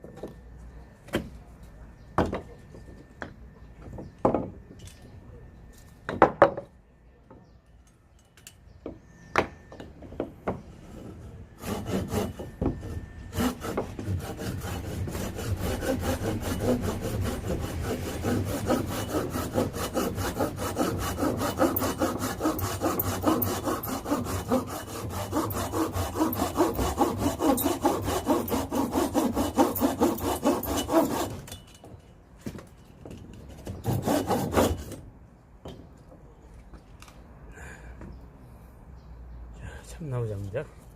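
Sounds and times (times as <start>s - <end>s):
hand saw cutting wood: 11.2s - 31.5s, 33.7s - 35.0s.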